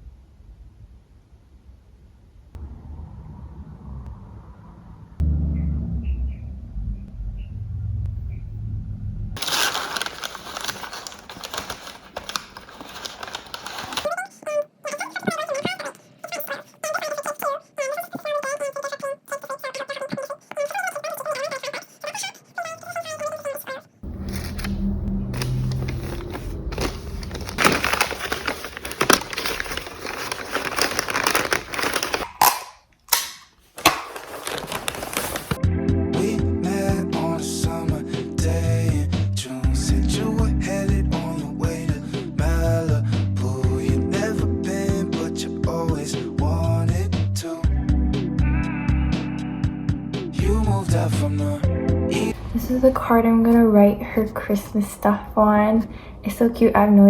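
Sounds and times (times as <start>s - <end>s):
packaging crackling and rustling: 9.4s - 14.1s, 24.0s - 35.6s
low steady hum: 24.0s - 31.9s.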